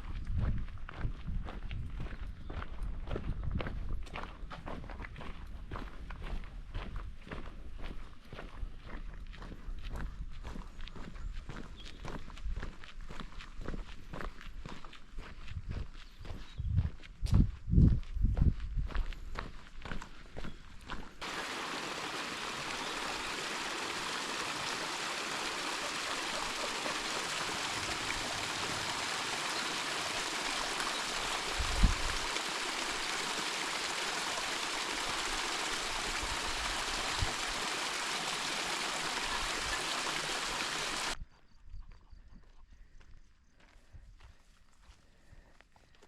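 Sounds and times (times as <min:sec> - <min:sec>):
stream water rushing: 0:21.2 - 0:41.2.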